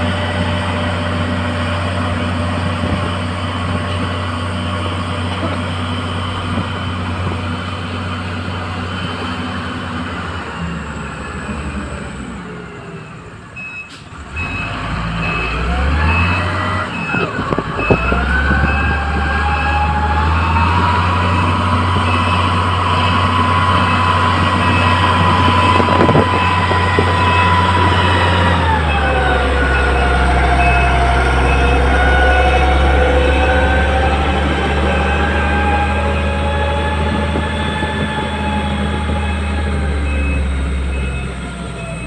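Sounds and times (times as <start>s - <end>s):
diesel engine revving: 0.0s - 42.0s
reversing alarm beeping: 12.9s - 42.0s.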